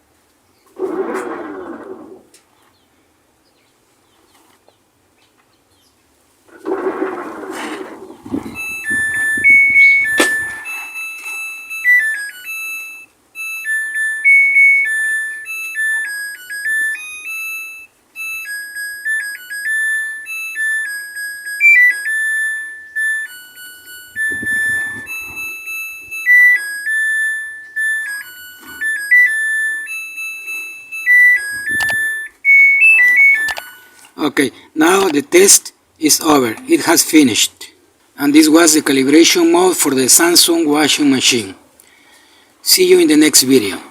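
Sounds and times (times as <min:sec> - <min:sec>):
washing machine beeping melody: 0:08.4 - 0:34.2.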